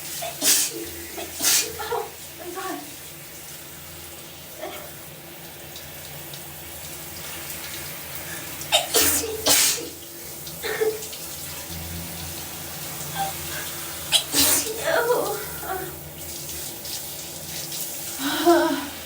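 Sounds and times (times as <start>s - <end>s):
shower water running: 0.0s - 19.0s
woman sneezing: 0.2s - 2.1s, 8.8s - 10.0s, 14.2s - 15.9s.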